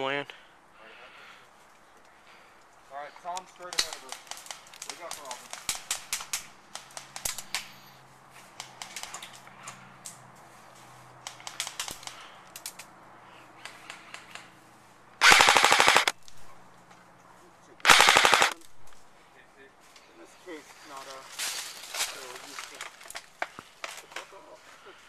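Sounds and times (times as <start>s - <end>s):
scattered clicks and snaps: 3.3s - 7.7s, 8.5s - 10.2s, 11.2s - 12.9s
airsoft rifle full-auto bursts: 15.2s - 16.2s, 17.8s - 18.6s.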